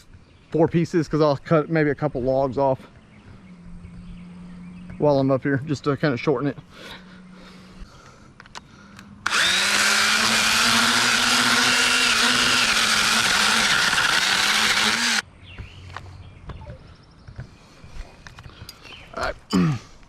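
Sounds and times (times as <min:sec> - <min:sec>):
electric pruning saw whining: 0:09.2 - 0:15.2.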